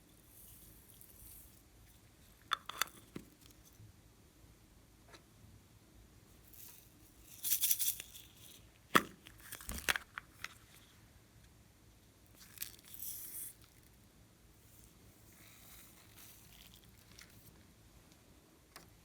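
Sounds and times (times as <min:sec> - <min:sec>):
crinkling and tearing: 0:09.2 - 0:10.7, 0:12.4 - 0:13.9, 0:15.6 - 0:17.6.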